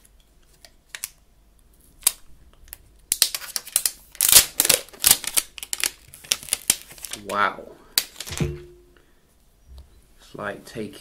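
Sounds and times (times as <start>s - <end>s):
plastic wrap crinkling: 1.9s - 8.3s.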